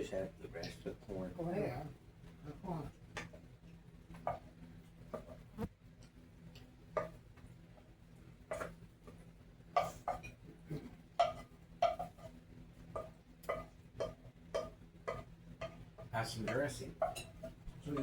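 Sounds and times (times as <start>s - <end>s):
cutlery clinking on plates: 8.5s - 8.8s, 9.8s - 10.4s, 11.2s - 12.3s, 13.0s - 15.8s, 16.4s - 18.0s.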